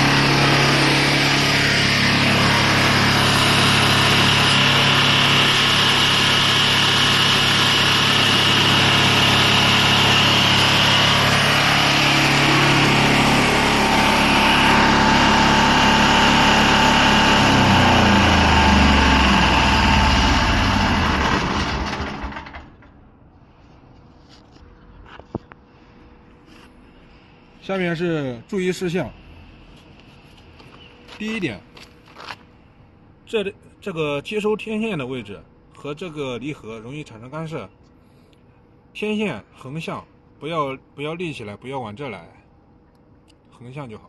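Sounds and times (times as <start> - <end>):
mower engine running: 0.0 - 22.8.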